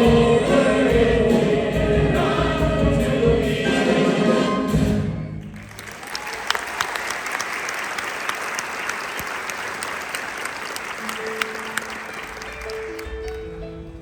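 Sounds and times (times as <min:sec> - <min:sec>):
audience applauding and cheering: 0:05.4 - 0:13.6
soft held instrumental notes: 0:11.0 - 0:14.0.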